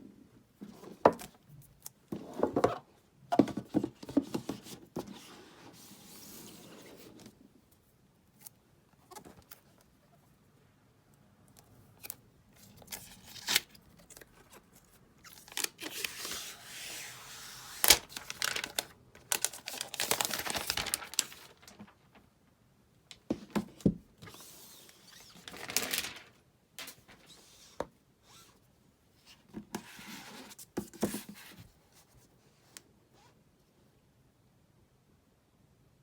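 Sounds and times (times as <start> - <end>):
packaging rustling and crinkling: 12.6 - 16.6, 17.6 - 22.4, 25.1 - 27.4.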